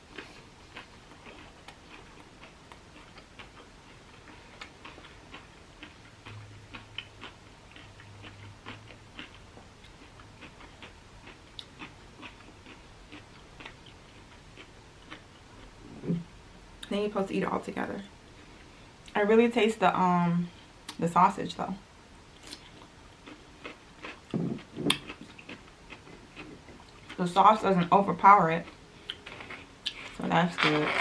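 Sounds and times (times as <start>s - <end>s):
chewing crunches: 0.0s - 15.8s, 22.4s - 27.2s, 28.6s - 30.2s
faint low hum: 0.0s - 31.0s.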